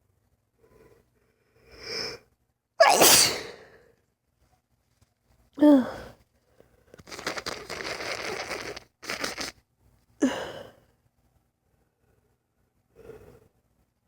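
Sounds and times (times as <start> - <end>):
woman sneezing: 2.8 - 3.6.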